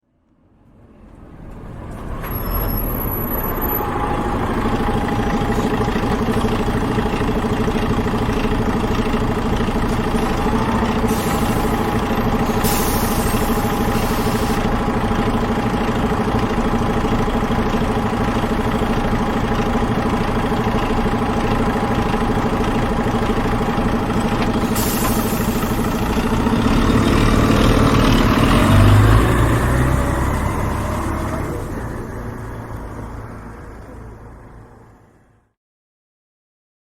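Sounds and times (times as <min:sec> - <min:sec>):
bus diesel engine idling: 0:00.4 - 0:35.5
air brake hisses: 0:11.0 - 0:14.7, 0:24.6 - 0:26.0.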